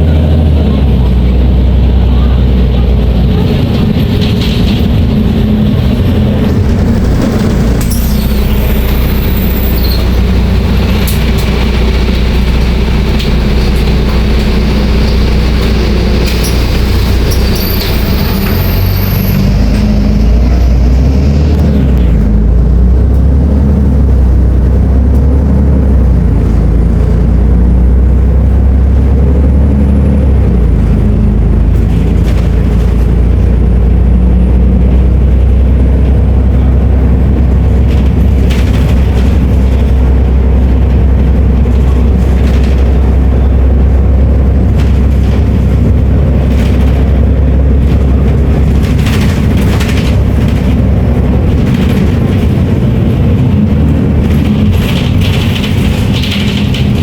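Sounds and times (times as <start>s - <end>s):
bus engine droning: 0.0s - 57.0s
rattles and knocks: 3.2s - 9.4s, 37.4s - 57.0s.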